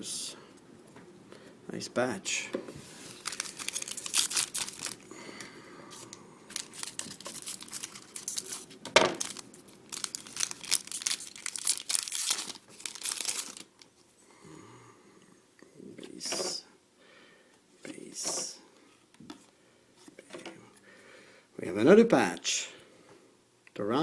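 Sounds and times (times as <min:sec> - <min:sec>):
foil wrapper crinkling and tearing: 0:03.0 - 0:05.1, 0:05.9 - 0:13.9.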